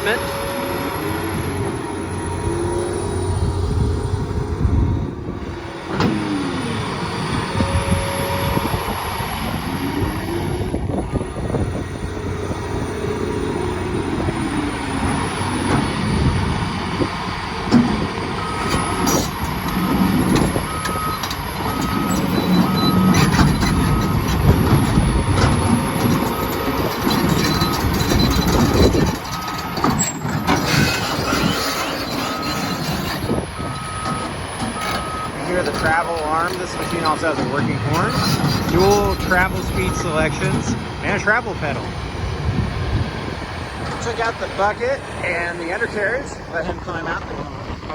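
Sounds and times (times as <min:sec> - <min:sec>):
travel alarm beeping: 0:00.0 - 0:02.6, 0:07.5 - 0:09.2, 0:20.4 - 0:24.3, 0:31.4 - 0:41.2
excavator engine and hydraulics: 0:00.0 - 0:47.9.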